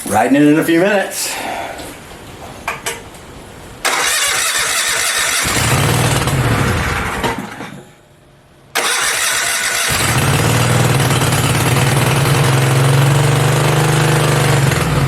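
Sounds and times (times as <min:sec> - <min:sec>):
small engine cranking: 0:03.9 - 0:06.8, 0:08.8 - 0:15.0
small engine running: 0:08.8 - 0:15.0.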